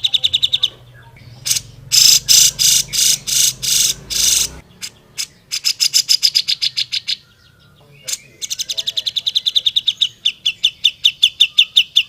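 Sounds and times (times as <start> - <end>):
bird sharp chips: 0.0 - 7.2
bird harsh buzzy song: 0.0 - 12.0.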